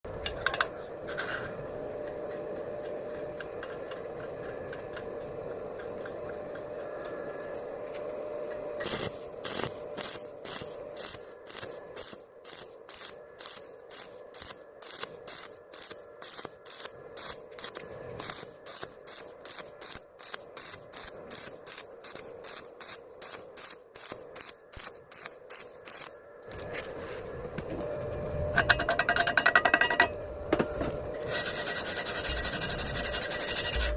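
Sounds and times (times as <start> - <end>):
faint hum: 0.1 - 33.9
steady hiss: 8.8 - 27.8
rhythmic scraping strokes: 31.2 - 33.9.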